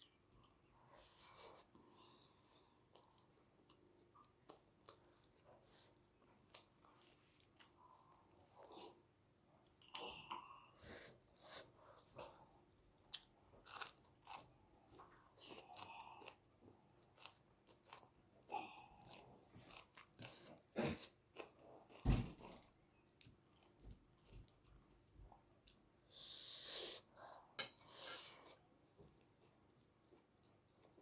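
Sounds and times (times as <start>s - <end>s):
person chewing crunchy food: 13.1s - 14.6s, 15.4s - 22.0s.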